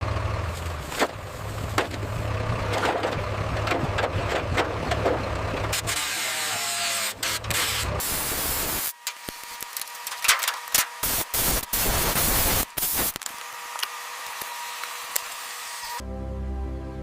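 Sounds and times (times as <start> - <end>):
low engine rumble: 0.0 - 6.1, 7.0 - 8.8
workshop tools knocking and clanking: 1.0 - 5.9
steady hiss: 11.0 - 13.2.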